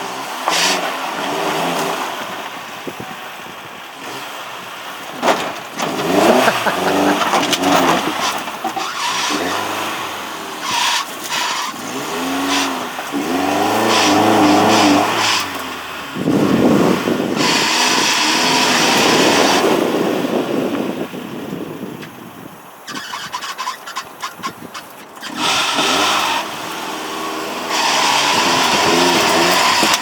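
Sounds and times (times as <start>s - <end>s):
engine revving: 4.0s - 20.0s, 25.2s - 30.0s.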